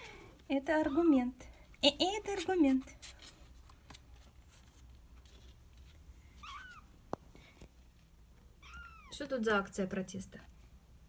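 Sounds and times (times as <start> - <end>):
kitten mewing: 8.6 - 9.2.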